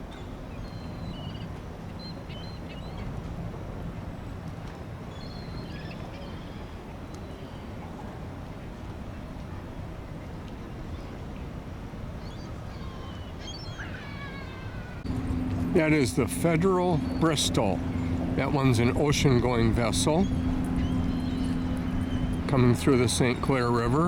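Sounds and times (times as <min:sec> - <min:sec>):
birds chirping: 0:12.3 - 0:24.0
steady low hum: 0:15.0 - 0:24.0.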